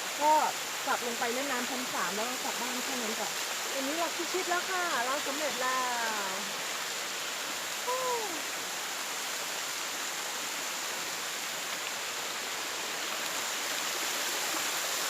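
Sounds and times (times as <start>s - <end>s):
waterfall rushing: 0.0s - 15.0s
short falling vocal sound: 7.8s - 8.4s.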